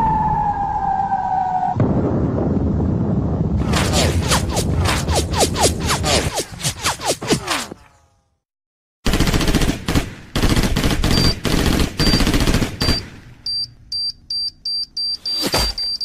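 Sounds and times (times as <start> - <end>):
machine-gun fire: 9.0 - 13.3
high electronic beeps: 12.8 - 16.0.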